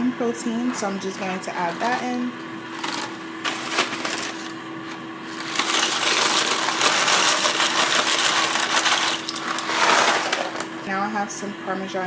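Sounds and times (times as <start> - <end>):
dry pasta pouring rattle: 1.2 - 10.9.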